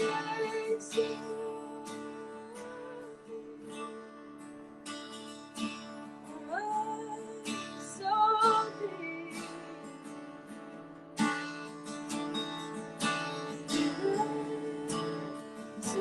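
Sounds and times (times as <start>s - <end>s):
woman singing: 0.0s - 4.1s, 6.3s - 10.0s, 13.6s - 16.0s
acoustic guitar strumming: 0.0s - 16.0s.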